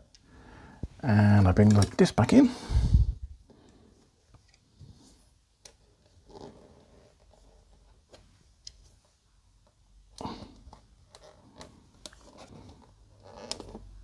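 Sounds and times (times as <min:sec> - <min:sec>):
plastic parts clicking and tapping: 0:01.5 - 0:02.1.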